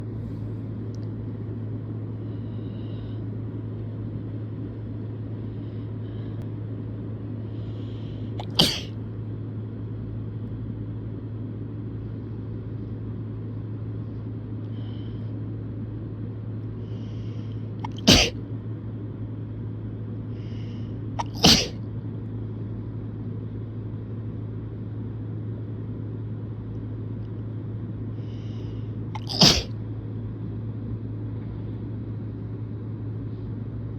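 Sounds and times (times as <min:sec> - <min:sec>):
steady low hum: 0:00.0 - 0:33.9
person sneezing: 0:08.4 - 0:09.0, 0:17.8 - 0:18.4, 0:21.2 - 0:21.8, 0:29.2 - 0:29.8.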